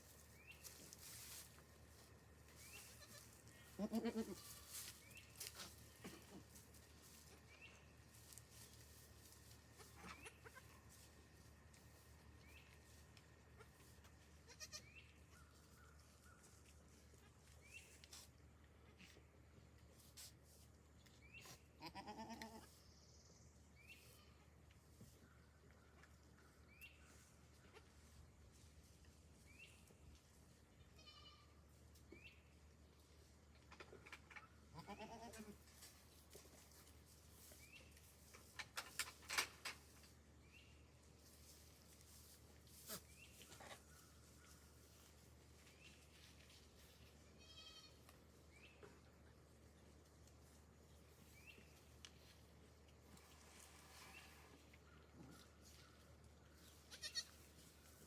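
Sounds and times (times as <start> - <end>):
goat kids bleating: 2.6 - 4.9, 9.7 - 11.0, 13.5 - 15.1, 21.4 - 22.7, 30.9 - 31.6, 34.4 - 35.6, 47.4 - 48.1, 56.7 - 57.5.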